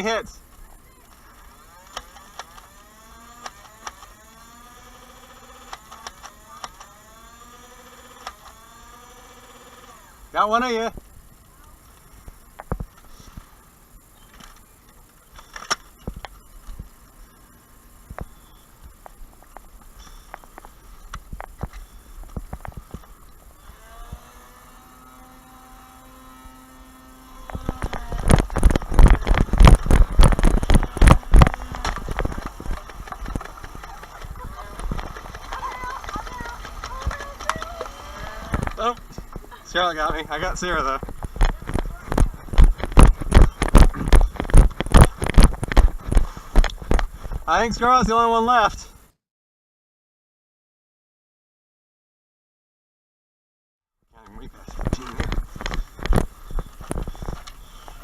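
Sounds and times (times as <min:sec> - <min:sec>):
blaster motors whining: 0:00.0 - 0:11.4, 0:21.6 - 0:45.8
rapid thumps and clatter: 0:27.4 - 0:47.5.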